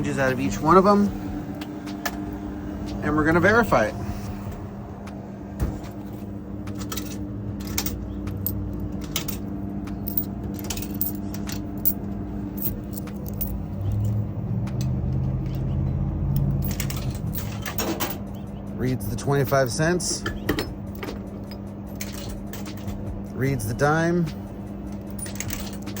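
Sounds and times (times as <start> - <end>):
steady low hum: 0.0 - 26.0
coins clinking from coin mechanism: 6.7 - 18.4, 20.5 - 23.5, 24.2 - 26.0.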